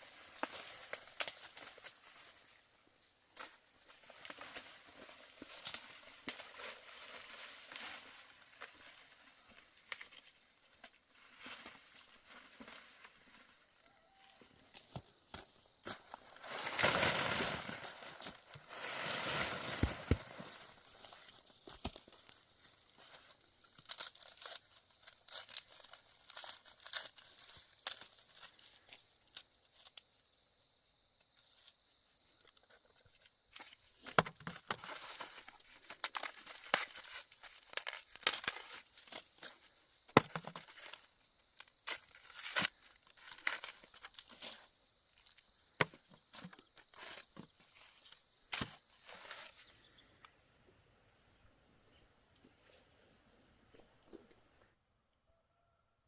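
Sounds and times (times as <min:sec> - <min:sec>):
dry leaves tearing and crumpling: 0:23.2 - 0:30.0, 0:34.4 - 0:39.8, 0:40.4 - 0:44.6.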